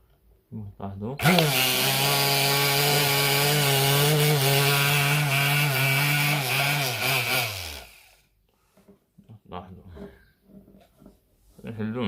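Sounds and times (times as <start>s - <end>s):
blender motor whining: 1.2s - 8.3s.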